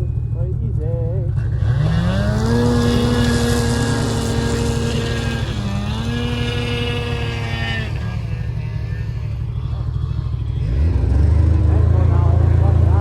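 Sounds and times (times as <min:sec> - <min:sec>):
snowmobile engine running: 0:00.0 - 0:13.0.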